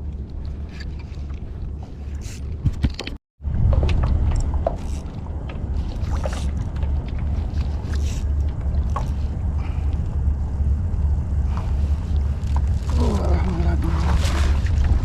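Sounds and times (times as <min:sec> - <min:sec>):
wind rumbling on microphone: 0:00.0 - 0:15.0
small water splashes: 0:12.7 - 0:15.0.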